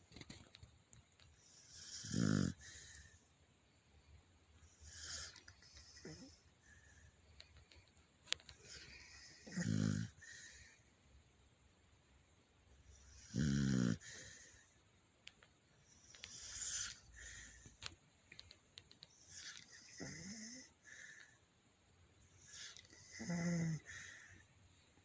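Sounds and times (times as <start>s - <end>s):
dog snoring: 1.4s - 3.1s, 4.8s - 6.4s, 8.6s - 10.6s, 13.0s - 14.5s, 16.0s - 17.6s, 19.3s - 20.8s, 22.4s - 24.2s.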